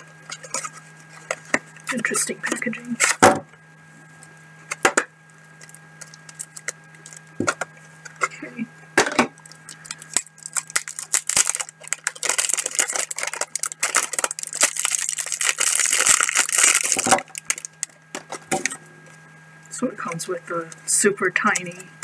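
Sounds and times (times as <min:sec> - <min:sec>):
plastic packaging crinkling: 0:00.0 - 0:02.1, 0:04.7 - 0:08.2, 0:09.3 - 0:18.8.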